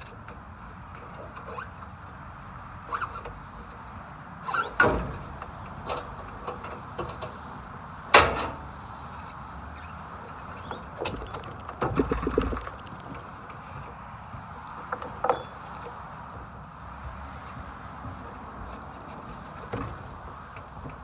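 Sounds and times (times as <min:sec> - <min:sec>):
knocks and clatter: 0:10.6 - 0:14.0, 0:17.9 - 0:21.0.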